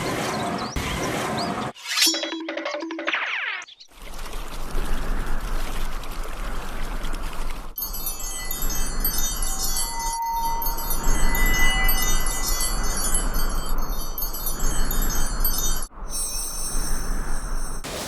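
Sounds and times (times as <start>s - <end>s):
rapid tinkling chimes: 7.8s - 18.0s.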